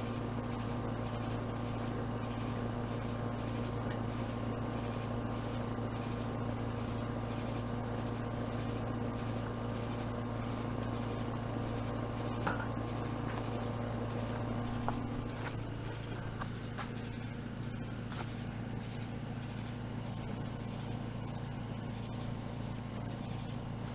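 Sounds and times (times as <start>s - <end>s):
low mechanical hum: 0.0s - 23.9s
background hiss: 0.1s - 23.9s.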